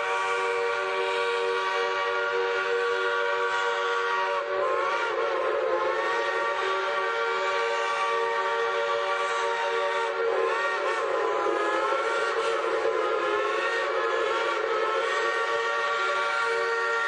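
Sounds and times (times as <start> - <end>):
train whistle: 0.0 - 17.0.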